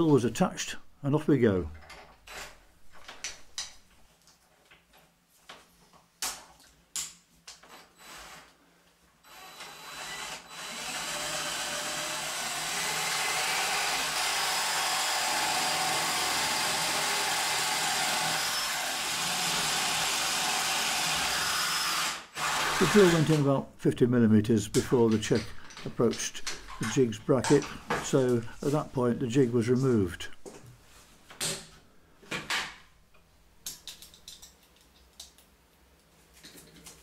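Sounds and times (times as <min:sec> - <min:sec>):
power drill boring into wood: 0:07.7 - 0:08.5, 0:09.2 - 0:23.4
scattered clicks and knocks: 0:32.4 - 0:35.5.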